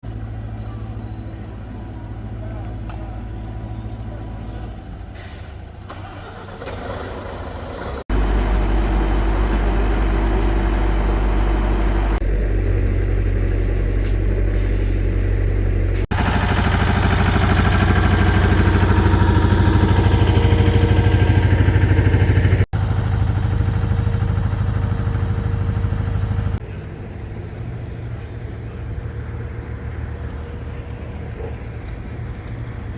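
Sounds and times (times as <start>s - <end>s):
diesel engines rumbling: 0.0s - 32.9s
air brake hiss: 5.1s - 5.7s, 14.6s - 15.3s.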